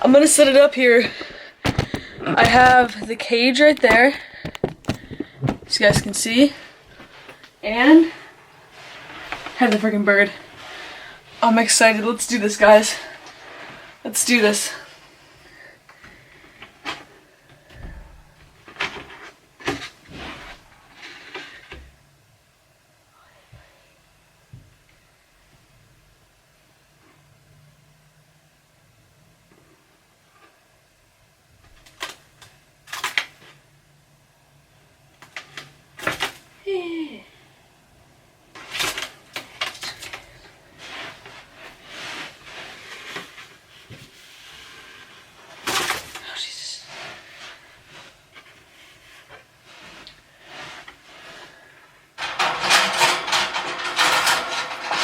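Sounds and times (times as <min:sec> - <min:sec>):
rustling and scraping handling noise: 0:00.1 - 0:15.4, 0:16.0 - 0:21.8, 0:38.5 - 0:55.0
bird cage rattling and knocking: 0:52.2 - 0:55.0.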